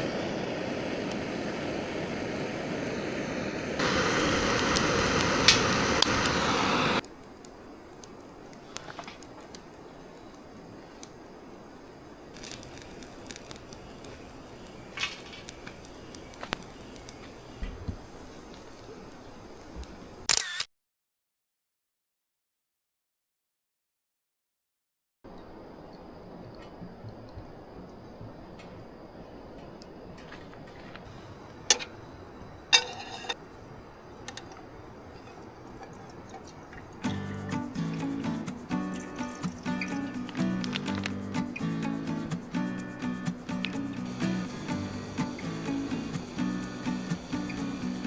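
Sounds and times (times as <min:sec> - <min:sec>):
wood fire crackling: 0:00.0 - 0:20.3, 0:36.3 - 0:48.0.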